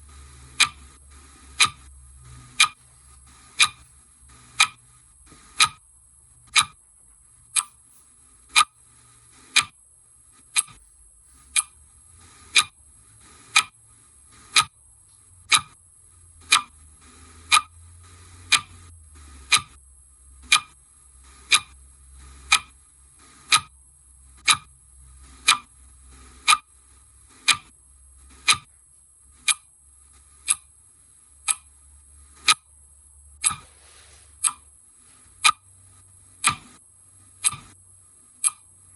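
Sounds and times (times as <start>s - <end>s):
clock ticking: 0.1s - 5.8s, 6.4s - 6.8s, 7.5s - 7.9s, 8.5s - 8.8s, 9.5s - 9.8s, 10.5s - 10.8s, 11.5s - 11.8s, 12.5s - 12.8s, 13.5s - 13.8s, 14.5s - 14.8s, 15.5s - 15.8s, 16.4s - 16.8s, 17.5s - 17.8s, 18.5s - 18.8s, 19.4s - 19.8s, 20.4s - 20.8s, 21.4s - 21.8s, 22.4s - 22.8s, 23.5s - 23.8s, 24.4s - 24.8s, 25.4s - 25.7s, 26.4s - 26.8s, 27.4s - 27.8s, 28.4s - 28.7s, 29.4s - 29.7s, 30.4s - 30.7s, 31.4s - 31.7s, 32.5s - 32.7s, 33.4s - 33.6s, 34.4s - 34.7s, 35.4s - 35.7s, 36.4s - 36.8s, 37.4s - 37.8s, 38.4s - 38.7s.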